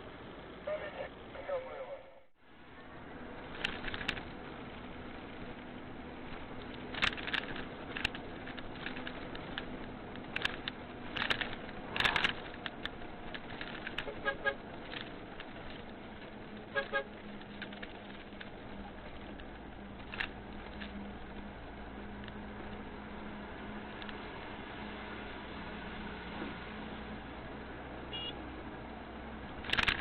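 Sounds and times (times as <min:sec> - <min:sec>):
truck engine humming: 0:00.0 - 0:29.6
clicks and rattles: 0:03.4 - 0:04.5, 0:05.3 - 0:22.9, 0:29.5 - 0:30.0.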